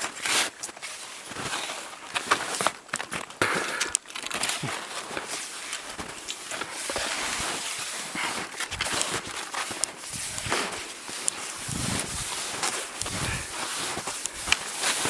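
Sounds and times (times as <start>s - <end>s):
rustling: 4.2s - 15.0s
footsteps crunching in snow: 4.3s - 15.0s.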